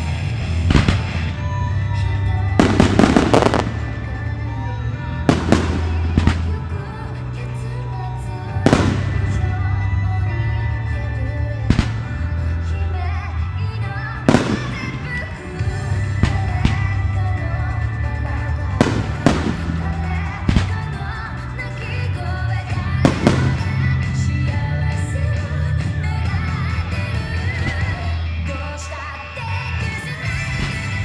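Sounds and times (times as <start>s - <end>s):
music with strong bass: 0.0s - 13.3s
fireworks bangs: 2.6s - 4.4s, 5.3s - 7.0s, 8.6s - 9.7s, 14.3s - 17.0s, 18.7s - 21.2s, 23.0s - 24.6s.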